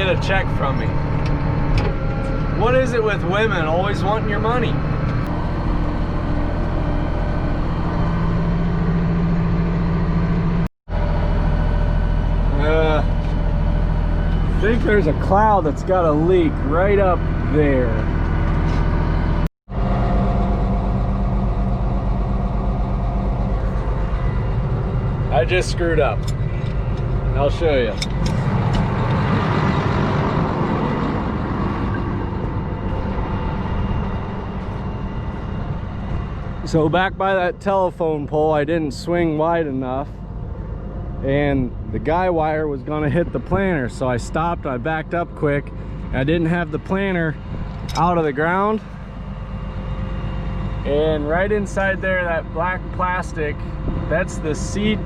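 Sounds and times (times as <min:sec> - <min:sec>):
tractor diesel engine running: 0:00.0 - 0:55.0.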